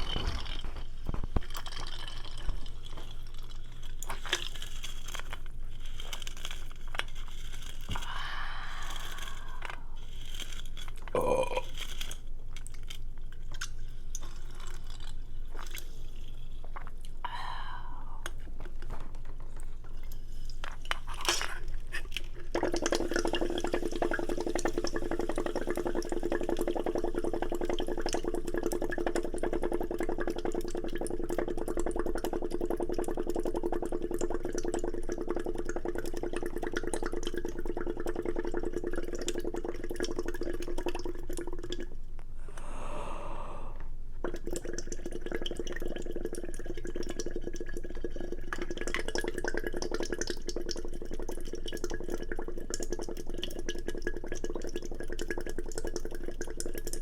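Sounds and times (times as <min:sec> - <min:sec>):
wet slurping and eating: 0:00.0 - 0:42.0, 0:42.6 - 0:57.0
steady hum: 0:07.9 - 0:12.6, 0:42.0 - 0:44.3.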